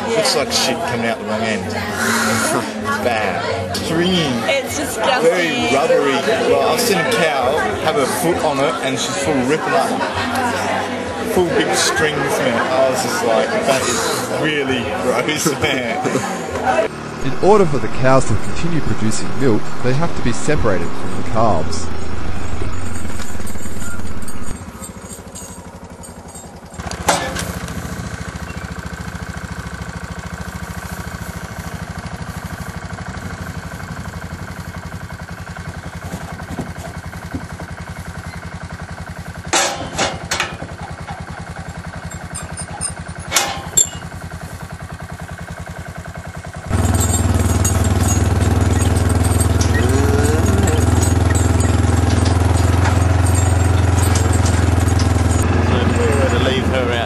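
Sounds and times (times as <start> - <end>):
deep engine drone: 0.0 - 4.6, 16.1 - 57.0
vehicle engine running: 0.0 - 57.0
sharp engine knocks: 39.5 - 41.2, 46.7 - 55.4.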